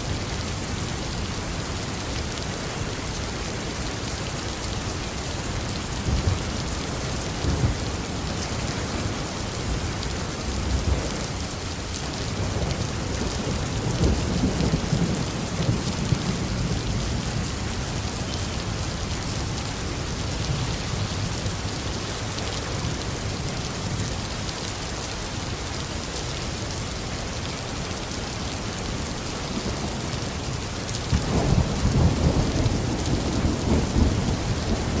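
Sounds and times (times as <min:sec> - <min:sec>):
heavy rain on a roof: 0:00.0 - 0:35.0
thunder rolling: 0:28.8 - 0:35.0.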